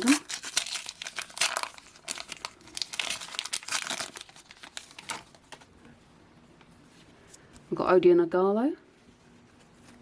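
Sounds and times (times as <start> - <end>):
card pack wrappers crinkling: 0.0 - 5.6.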